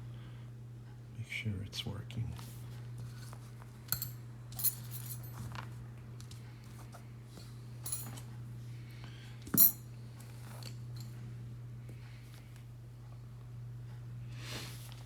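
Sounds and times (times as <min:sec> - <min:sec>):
steady low hum: 0:00.0 - 0:15.0
light metallic clicks and clinks: 0:03.9 - 0:05.4, 0:07.8 - 0:08.3, 0:09.6 - 0:09.8.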